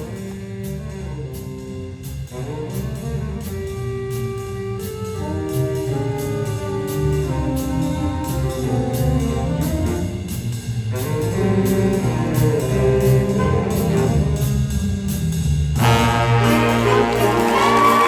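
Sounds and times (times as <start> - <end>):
big band playing swing jazz: 0.0 - 18.0.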